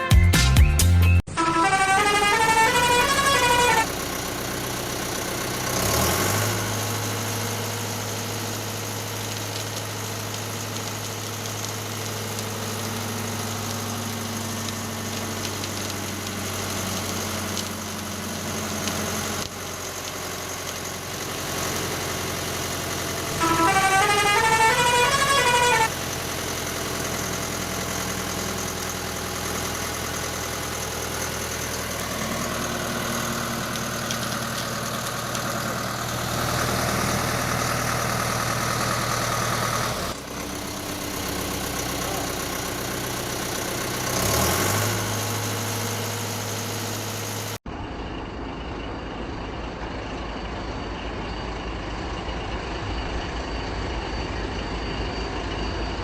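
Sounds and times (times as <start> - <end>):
synthetic engine hum: 0.8 - 54.6
toy siren rising and falling: 23.4 - 25.9.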